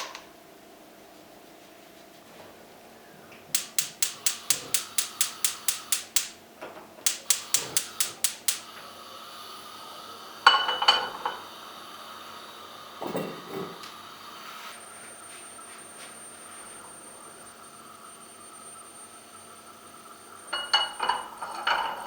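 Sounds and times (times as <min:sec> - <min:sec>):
sharp evenly paced clicks: 0:03.5 - 0:06.4, 0:07.0 - 0:08.8.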